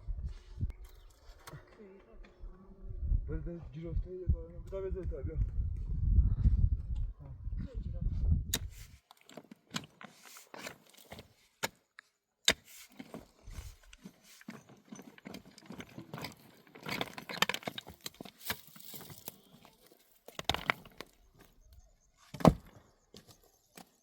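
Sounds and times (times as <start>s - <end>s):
branches rustling: 17.3s - 21.1s.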